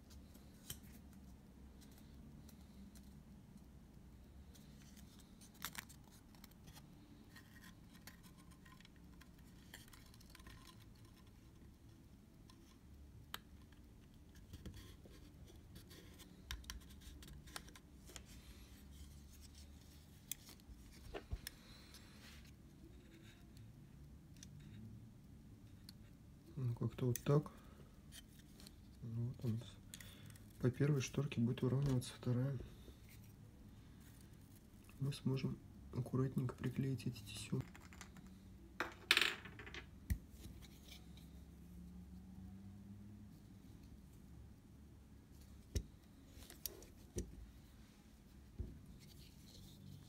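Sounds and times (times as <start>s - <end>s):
small clicks and scrapes: 4.4s - 11.8s, 12.4s - 24.9s.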